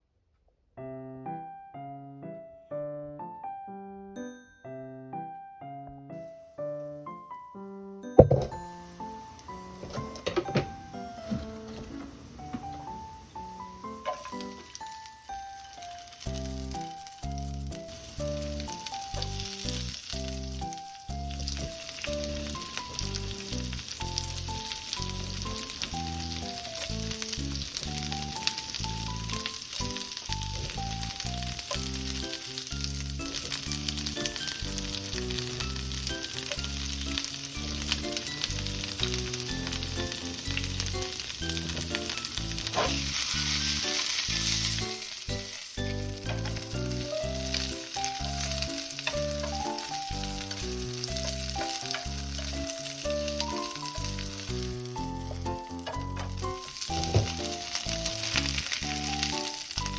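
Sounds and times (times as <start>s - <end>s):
slow background music: 0.9s - 59.9s
greens sizzling in a pan: 6.2s - 11.8s, 12.4s - 59.9s
stirring in a pan: 12.8s - 59.9s.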